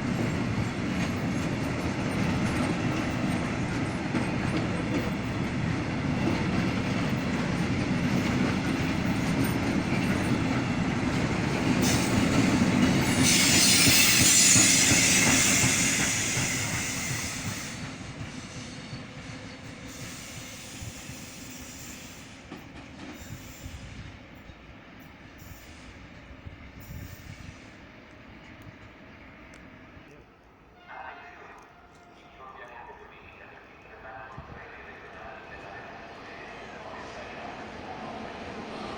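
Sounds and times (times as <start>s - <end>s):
train wheels rumbling on track: 0.0s - 30.3s, 31.3s - 38.9s
high squealing hiss: 13.1s - 17.7s.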